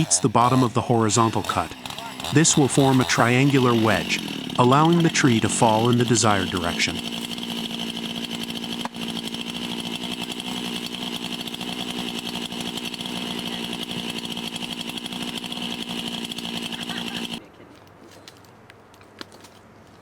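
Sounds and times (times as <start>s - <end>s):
chainsaw cutting tree trunk: 0.0s - 17.4s.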